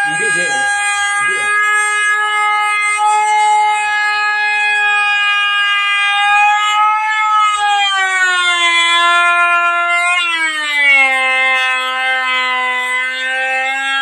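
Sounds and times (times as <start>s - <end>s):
woodworking machine whining: 0.0s - 1.8s.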